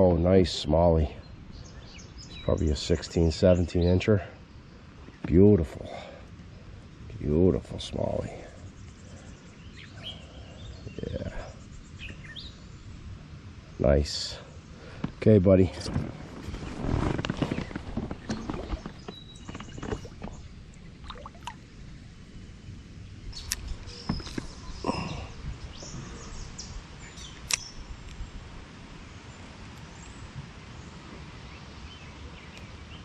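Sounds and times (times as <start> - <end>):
river ambience: 0.0 - 33.0
bird chirps: 8.5 - 12.9, 17.4 - 21.6, 23.2 - 28.2.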